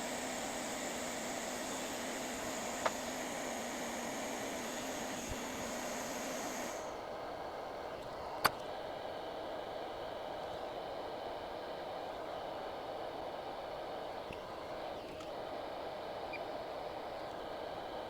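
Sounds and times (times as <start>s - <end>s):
electronics fan whirring: 0.0s - 18.0s.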